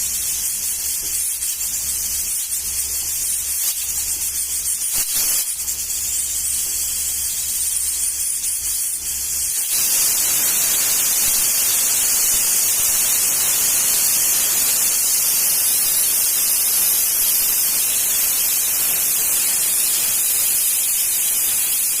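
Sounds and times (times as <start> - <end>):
pressure cooker hissing steam: 0.0 - 22.0.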